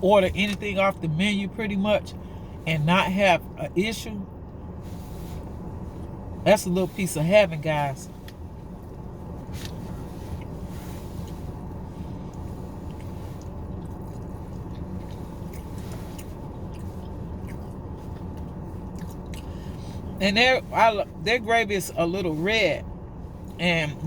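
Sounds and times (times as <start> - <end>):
low hum inside a car: 0.0 - 24.0
person chewing food: 12.3 - 19.8.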